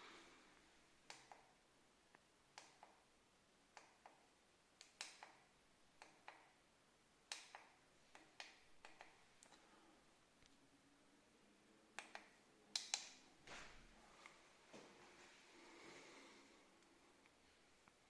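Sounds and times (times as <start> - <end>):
faint sharp clicks: 7.3 - 9.6, 11.9 - 13.2.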